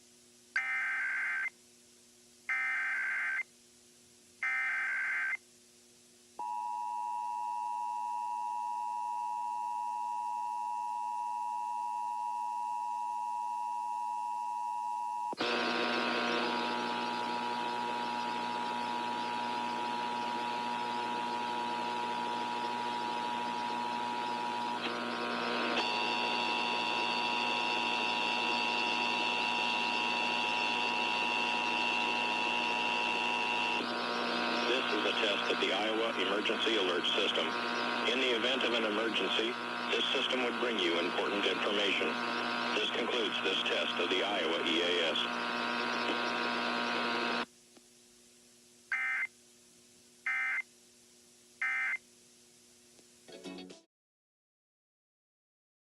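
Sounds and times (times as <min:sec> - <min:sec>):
faint steady hum: 0:00.0 - 0:53.3.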